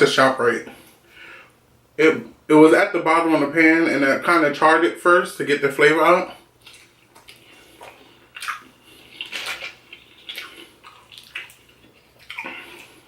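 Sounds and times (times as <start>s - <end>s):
wet eating sounds: 6.3s - 13.0s.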